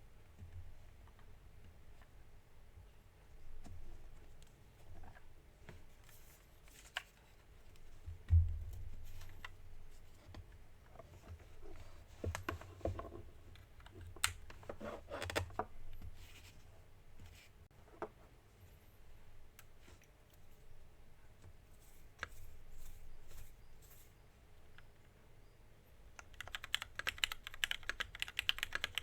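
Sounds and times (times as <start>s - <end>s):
mechanical keyboard typing: 26.2s - 29.0s.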